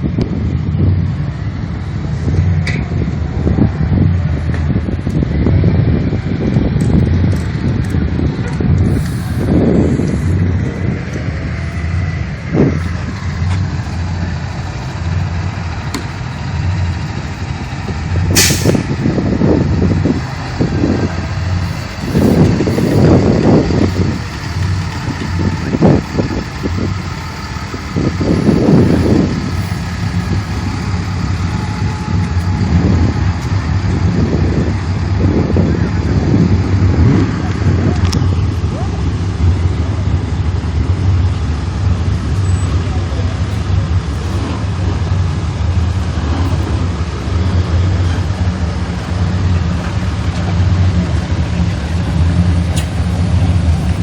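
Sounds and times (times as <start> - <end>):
large engine rumbling: 0.0 - 54.0
brief sharp hiss: 18.4 - 18.9.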